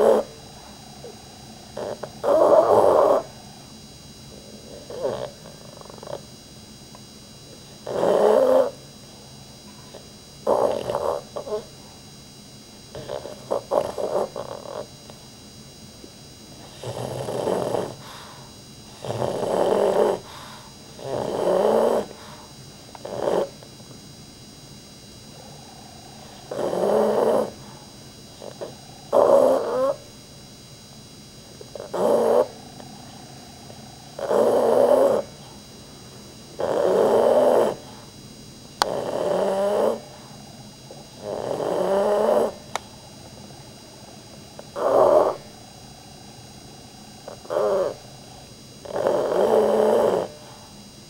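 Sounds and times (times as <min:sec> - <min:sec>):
dog snoring: 0:00.0 - 0:06.4, 0:07.0 - 0:09.2, 0:09.8 - 0:12.0, 0:12.9 - 0:15.2, 0:16.5 - 0:23.8, 0:25.3 - 0:30.2, 0:31.5 - 0:35.7, 0:36.5 - 0:38.2, 0:38.8 - 0:42.9, 0:44.6 - 0:45.8, 0:46.6 - 0:50.9.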